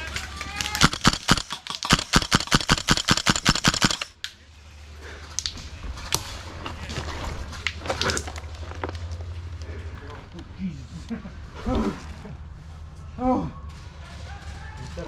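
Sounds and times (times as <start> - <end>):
airsoft gun firing: 0.6 - 4.2.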